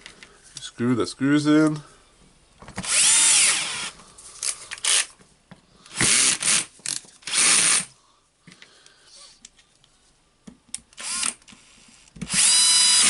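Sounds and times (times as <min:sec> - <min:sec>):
cordless screwdriver whining: 0:02.8 - 0:05.1, 0:05.9 - 0:07.9, 0:10.9 - 0:13.0.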